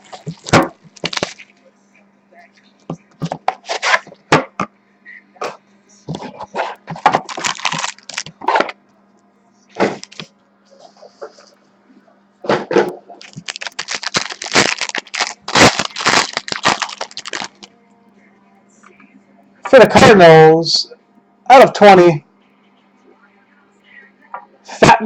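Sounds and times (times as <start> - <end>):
wrapper crinkling and crackling: 0.0 - 1.6, 6.7 - 8.8, 9.7 - 10.3, 13.2 - 17.7
faint electrical hum: 0.0 - 25.0.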